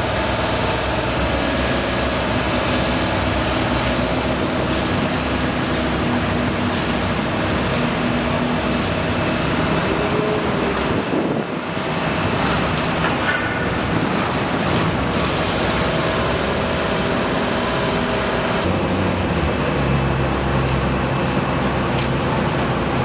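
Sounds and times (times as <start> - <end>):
low engine hum: 13.6 - 23.0.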